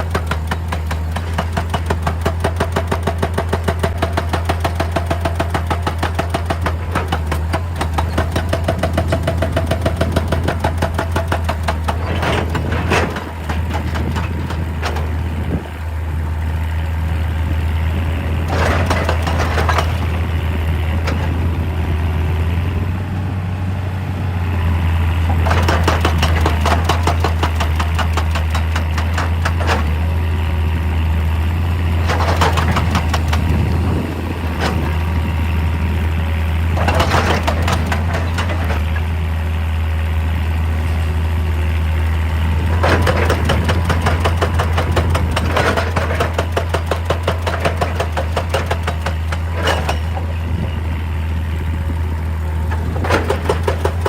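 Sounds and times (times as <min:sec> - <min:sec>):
hydraulic breaker hammering rock: 0:00.0 - 0:15.8, 0:18.3 - 0:21.6, 0:25.2 - 0:30.2, 0:31.9 - 0:35.4, 0:36.6 - 0:39.2, 0:42.5 - 0:51.0, 0:52.6 - 0:54.0
diesel excavator engine running: 0:00.0 - 0:54.0.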